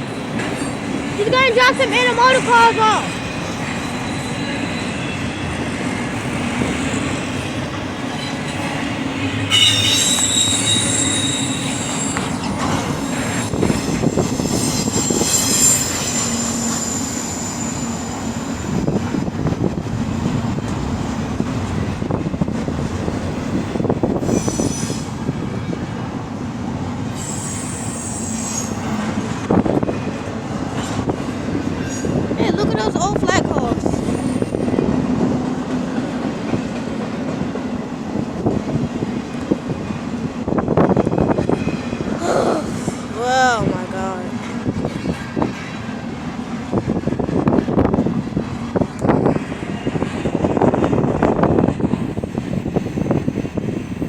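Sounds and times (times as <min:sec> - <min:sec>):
steel wheels squealing on rail: 0:00.0 - 0:19.2, 0:23.6 - 0:25.9, 0:27.0 - 0:30.2, 0:31.7 - 0:35.0, 0:40.7 - 0:45.9.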